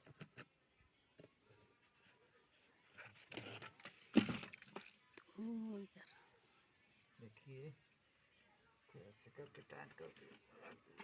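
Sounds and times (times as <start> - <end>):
soft rustle: 5.0 - 11.0.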